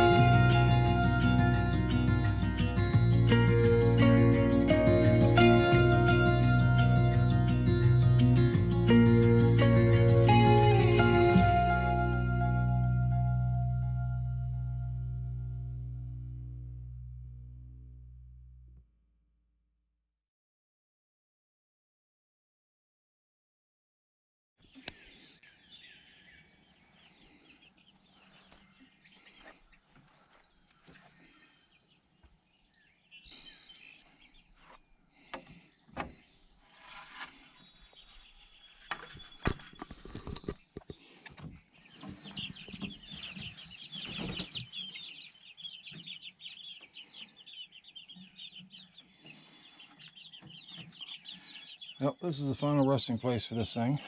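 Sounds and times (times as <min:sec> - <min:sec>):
chicks clucking and peeping: 0:41.8 - 0:53.9.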